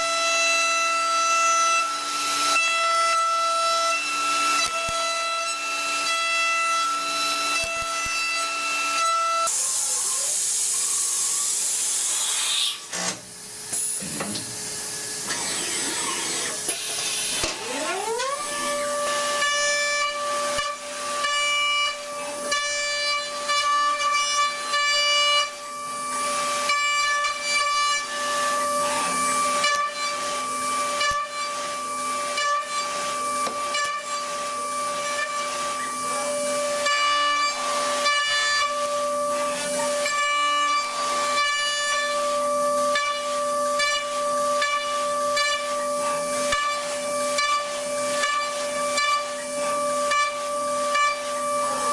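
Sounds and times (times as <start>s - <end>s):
machine high-pitched whine: 0.0s - 51.9s
hiss: 9.5s - 12.9s.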